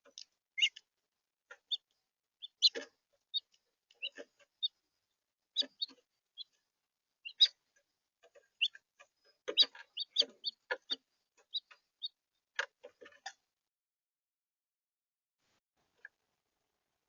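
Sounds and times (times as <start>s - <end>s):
finches chirping: 0.6s - 0.8s, 1.5s - 4.8s, 5.5s - 6.6s, 7.2s - 7.6s, 8.5s - 12.2s.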